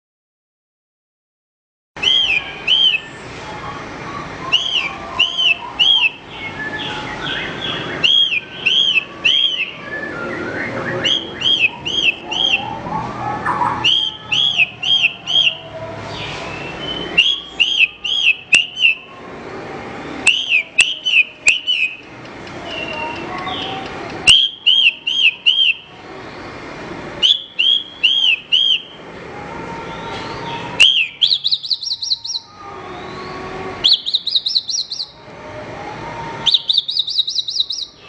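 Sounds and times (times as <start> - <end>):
bird singing whistled notes: 2.0 - 3.2, 4.5 - 15.6, 16.2 - 19.1, 20.2 - 22.1, 22.7 - 25.9, 27.2 - 29.0, 30.0 - 35.2, 36.4 - 38.0.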